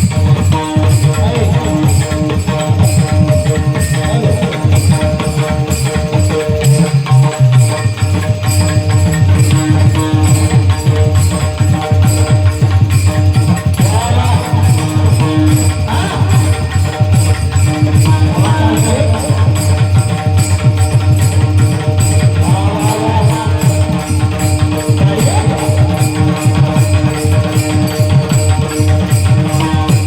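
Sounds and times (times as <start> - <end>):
jingling percussion: 0.0 - 30.0
steady held tones: 0.0 - 30.0.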